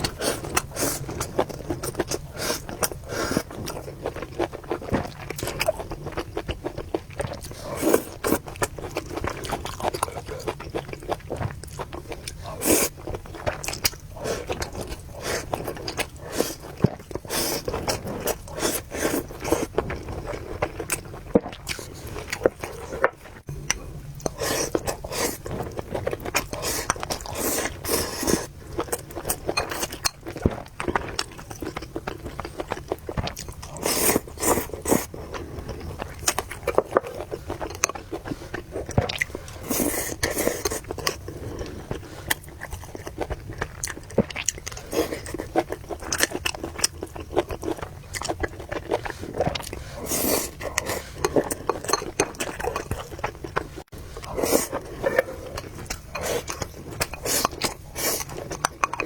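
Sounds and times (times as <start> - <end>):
slurping noodles: 0.0 - 3.8, 7.5 - 8.5, 12.4 - 13.0, 14.2 - 20.4, 24.2 - 28.5, 33.7 - 35.5, 38.1 - 42.4, 48.5 - 59.0
chewing and biting: 0.0 - 59.0.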